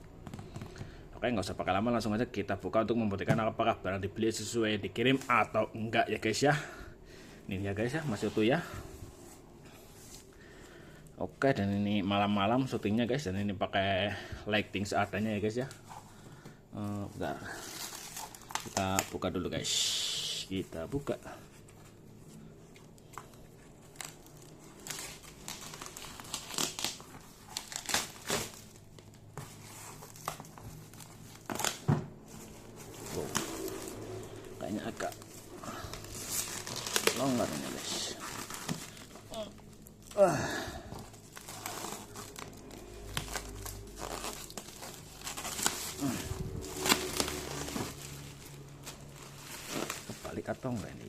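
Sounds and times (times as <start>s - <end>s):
packaging crinkling and rustling: 16.8s - 51.0s
packaging ripping: 17.5s - 19.2s, 23.2s - 51.0s.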